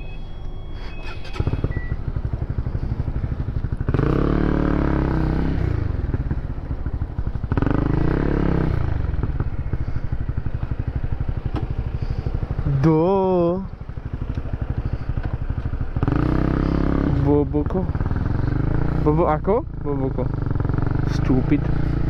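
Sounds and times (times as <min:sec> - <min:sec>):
motorcycle engine revving: 0:00.8 - 0:22.0.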